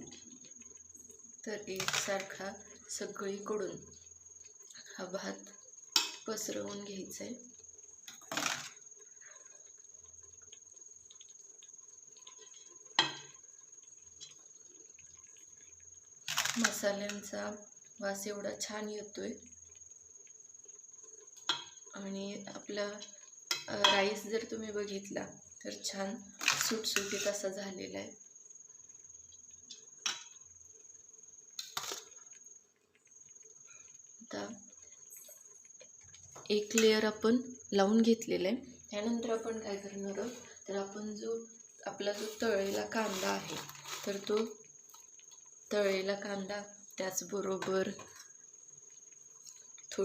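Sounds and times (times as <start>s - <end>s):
utensil scraping rice in pot: 26.4s - 27.4s, 42.0s - 44.6s.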